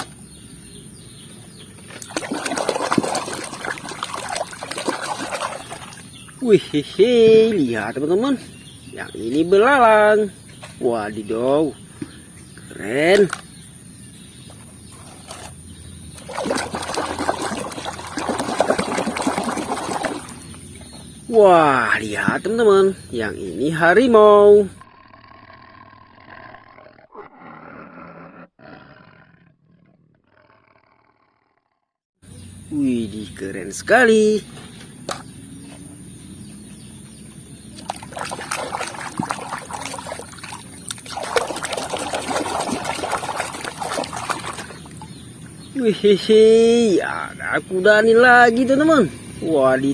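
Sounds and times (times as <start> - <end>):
water trickling and splashing: 1.8 - 7.7, 15.0 - 22.6, 37.6 - 45.7.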